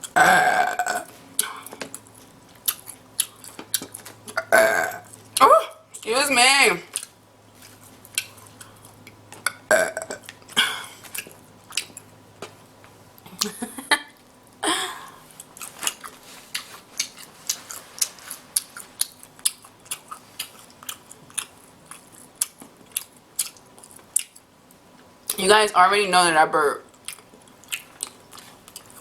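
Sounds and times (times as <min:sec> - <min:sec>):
loud burp: 0:00.2 - 0:01.1, 0:04.4 - 0:05.1, 0:09.7 - 0:10.9
wet chewing and lip-smacking: 0:01.4 - 0:04.4, 0:06.9 - 0:09.6, 0:10.2 - 0:12.6, 0:15.4 - 0:25.4, 0:26.9 - 0:29.0.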